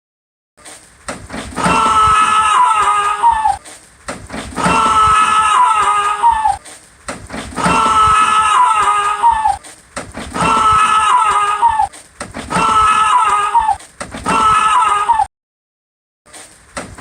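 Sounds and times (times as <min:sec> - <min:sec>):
high-pitched scream: 0:01.6 - 0:03.6, 0:04.6 - 0:06.6, 0:07.6 - 0:09.6, 0:10.4 - 0:11.9, 0:12.5 - 0:15.3.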